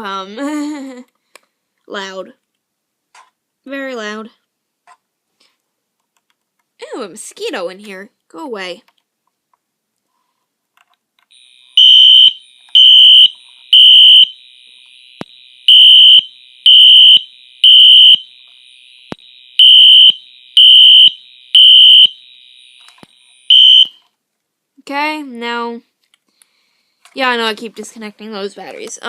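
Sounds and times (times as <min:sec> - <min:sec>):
fire alarm beeping: 0:11.3 - 0:24.0.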